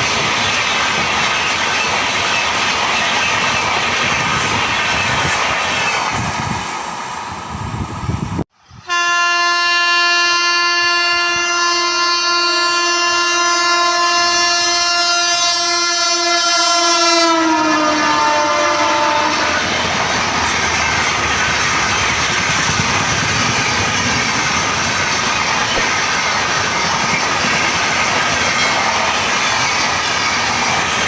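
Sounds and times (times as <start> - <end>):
train wheels roaring on rails: 0.0 - 31.0
locomotive horn blast: 8.8 - 19.7.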